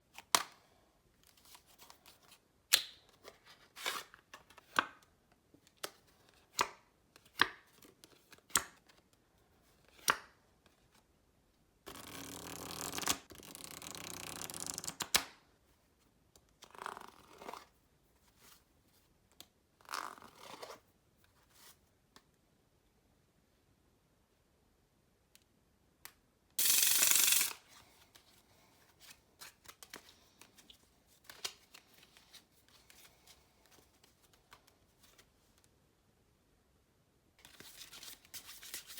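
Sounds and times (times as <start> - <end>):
soft brushing of cards: 18.0 - 19.1
cards rustling: 26.6 - 35.3.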